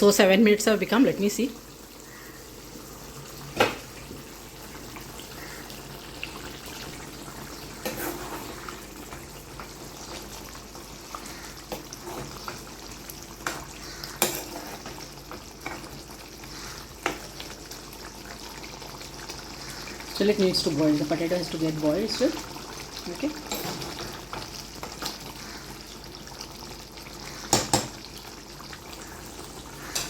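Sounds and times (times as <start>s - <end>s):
curry simmering in a pot: 0.1s - 30.0s
spoon stirring: 7.8s - 8.7s.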